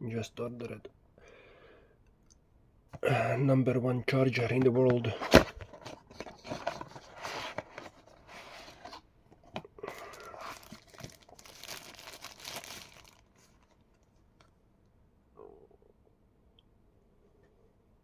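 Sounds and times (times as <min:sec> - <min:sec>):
packaging crinkling and tearing: 0:05.1 - 0:13.9.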